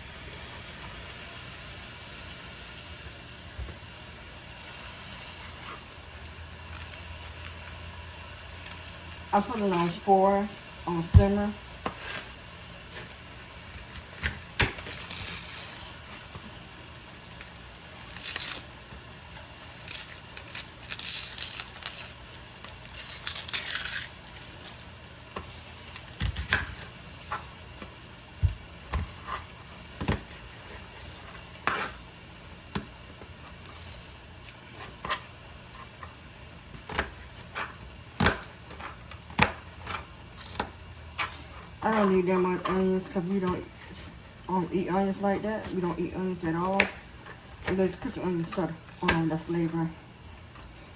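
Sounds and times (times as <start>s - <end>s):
packaging crinkling and tearing: 13.7s - 25.0s.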